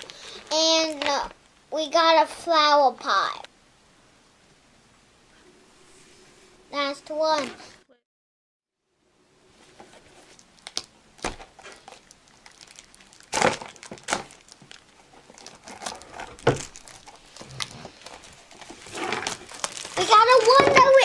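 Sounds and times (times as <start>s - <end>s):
packaging crinkled and torn: 9.9s - 21.0s.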